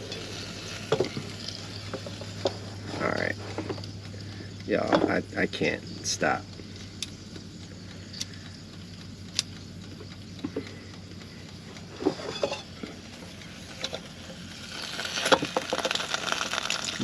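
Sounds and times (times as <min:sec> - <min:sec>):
low electrical hum: 0:00.0 - 0:17.0
sharp light clicks: 0:03.8 - 0:13.5.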